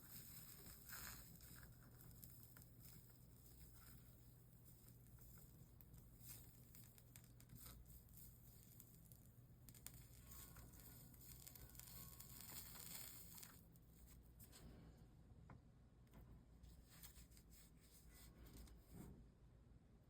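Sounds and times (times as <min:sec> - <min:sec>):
soft hiss: 0:00.0 - 0:15.3.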